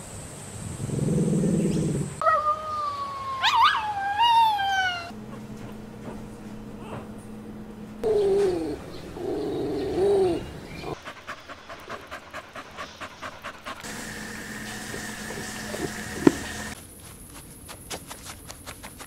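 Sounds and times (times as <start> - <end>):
puppy whining: 2.2 - 7.3, 8.0 - 11.0
puppy panting: 5.2 - 7.2, 8.0 - 16.8.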